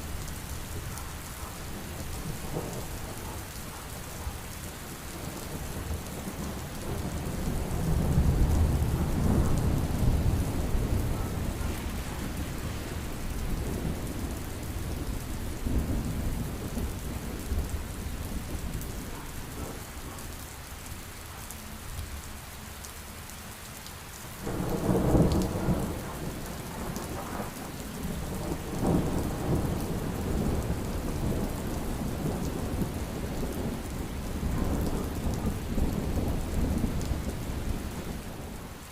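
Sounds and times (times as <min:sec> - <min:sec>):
heavy rain: 0:00.0 - 0:38.9
rolling thunder: 0:05.2 - 0:19.9, 0:24.4 - 0:38.6.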